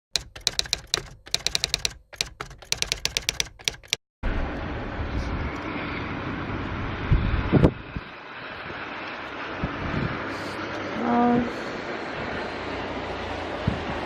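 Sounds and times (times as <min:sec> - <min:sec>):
typewriter key clicks: 0:00.1 - 0:04.0
distant traffic: 0:04.2 - 0:14.0
wind: 0:04.2 - 0:14.0.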